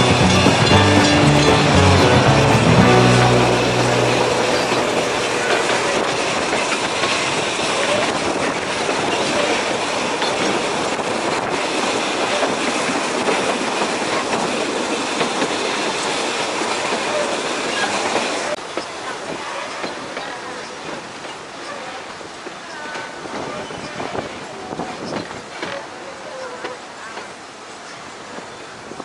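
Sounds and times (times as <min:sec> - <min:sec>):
train wheels clattering on rails: 0:05.5 - 0:19.0.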